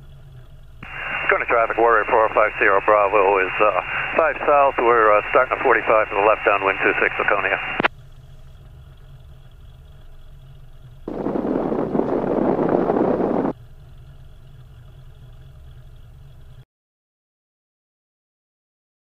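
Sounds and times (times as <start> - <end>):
aircraft engine humming: 0.0 - 16.6
radio static burst: 0.8 - 7.9, 11.1 - 13.5.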